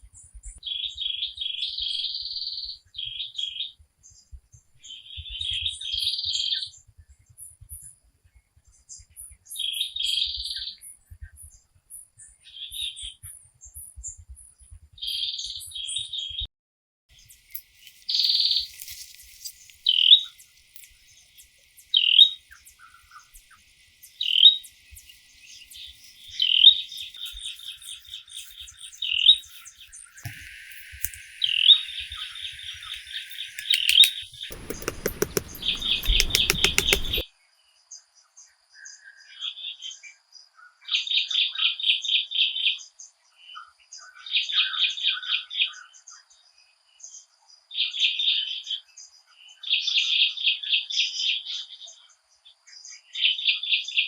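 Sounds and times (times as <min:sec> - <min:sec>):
bird chirps: 0:17.2 - 0:37.2
rapid clicking rattle: 0:17.4 - 0:37.2.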